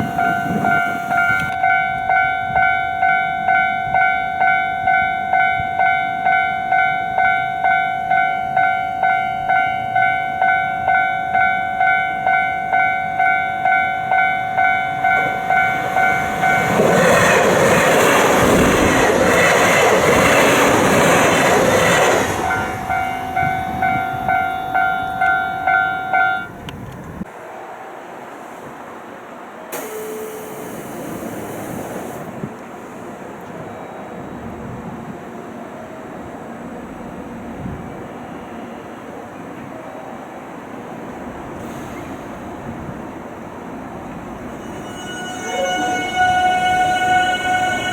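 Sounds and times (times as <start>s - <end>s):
level-crossing bell dinging: 0.0s - 17.3s, 22.4s - 26.6s, 44.5s - 47.9s
train wheels clickety-clack: 15.2s - 22.7s.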